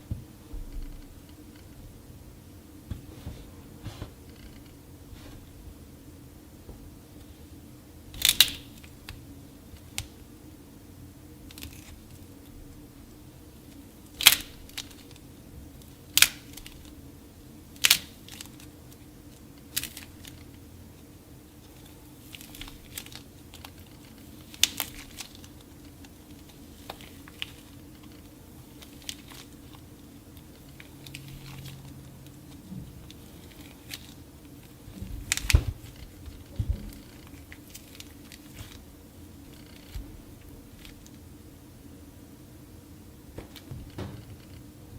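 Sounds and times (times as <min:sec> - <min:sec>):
hardened clay cracking and crumbling: 0:13.6 - 0:17.0, 0:17.8 - 0:41.2.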